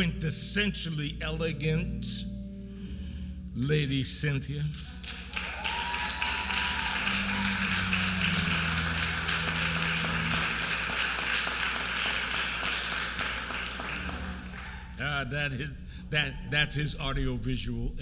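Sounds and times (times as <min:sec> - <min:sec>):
congregation applauding: 0:04.7 - 0:15.5.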